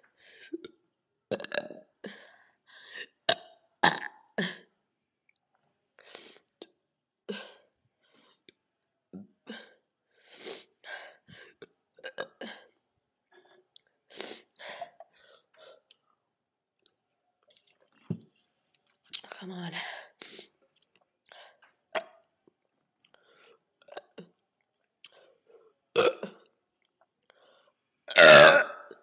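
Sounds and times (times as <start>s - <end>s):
woman burping: 0.6s - 2.0s, 3.3s - 4.7s, 25.9s - 26.5s, 28.1s - 29.0s.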